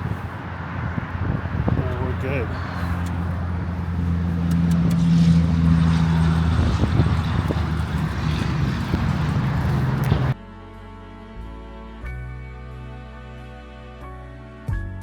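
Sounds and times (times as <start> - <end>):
low mechanical drone: 0.0 - 10.4
rushing noise: 0.0 - 10.4
faint clicks: 4.4 - 5.0.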